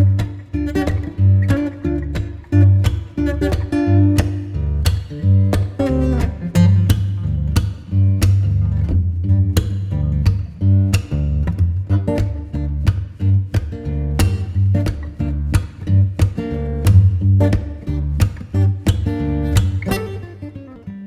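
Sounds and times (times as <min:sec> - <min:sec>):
guitar-led music with beat: 0:00.0 - 0:21.0.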